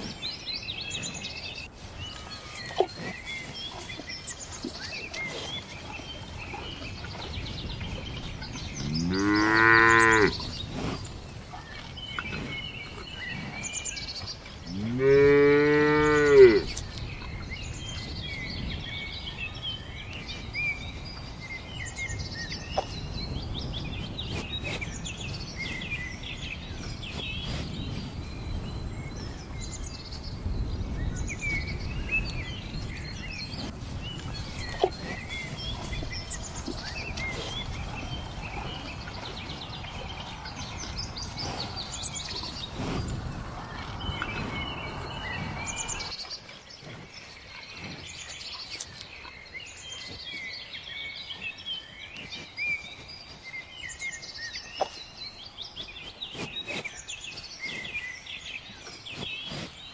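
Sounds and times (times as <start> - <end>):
small birds chirping: 0.0 - 59.9
low outdoor rumble: 30.4 - 46.2.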